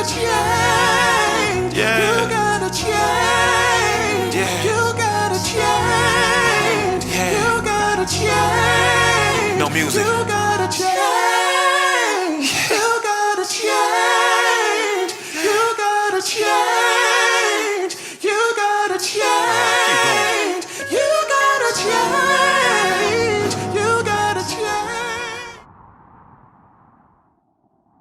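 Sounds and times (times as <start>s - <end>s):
low bass part: 0.0s - 10.8s
person singing with vibrato: 0.0s - 25.6s.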